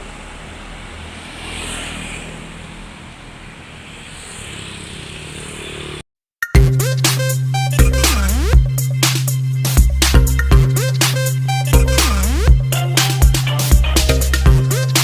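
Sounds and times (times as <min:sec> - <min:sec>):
vehicle passing: 0:00.0 - 0:06.0
roadside traffic noise: 0:00.0 - 0:06.1
music with heavy beat: 0:06.4 - 0:15.0.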